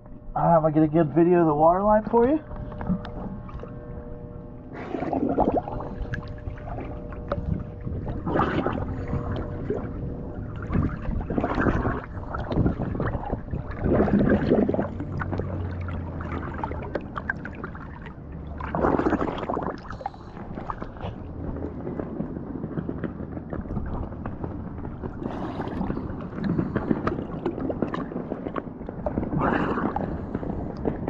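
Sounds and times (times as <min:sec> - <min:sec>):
low underwater rumble: 0:00.0 - 0:31.0
bubbly regulator exhalations: 0:04.6 - 0:22.2, 0:25.0 - 0:31.0.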